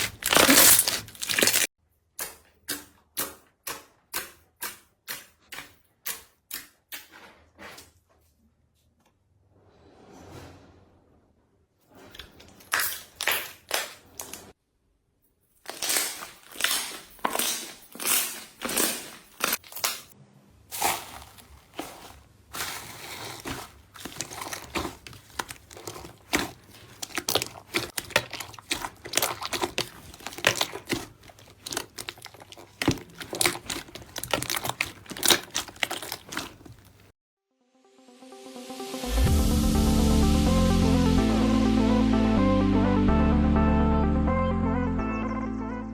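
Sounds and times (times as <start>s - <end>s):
slime squishing by hand: 0.0s - 6.7s, 15.7s - 37.1s.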